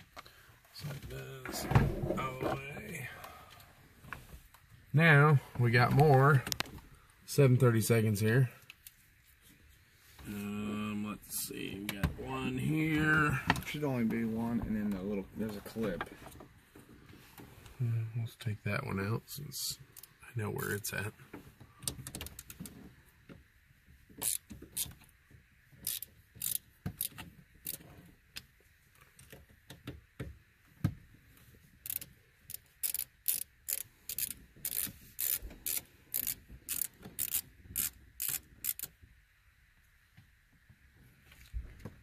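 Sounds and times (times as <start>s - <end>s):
hand ratchet clicking: 24.2s - 24.9s, 25.8s - 27.8s, 31.8s - 39.0s.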